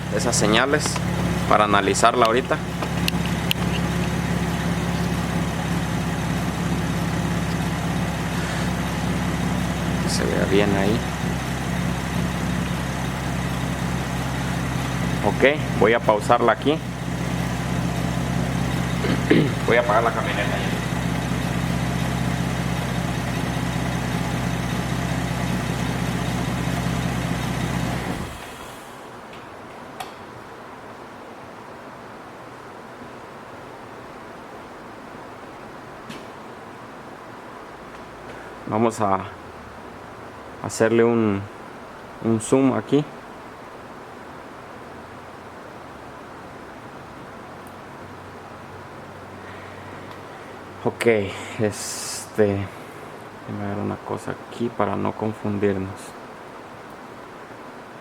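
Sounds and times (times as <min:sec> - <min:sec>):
car engine idling with misfire knock: 0:00.0 - 0:29.1
faint hiss: 0:00.0 - 0:58.0.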